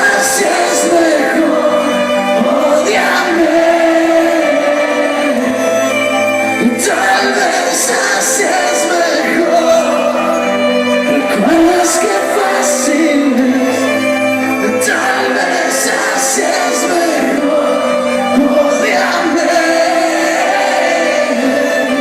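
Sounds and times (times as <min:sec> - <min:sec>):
live band playing: 0:00.0 - 0:22.0
person singing: 0:00.0 - 0:22.0.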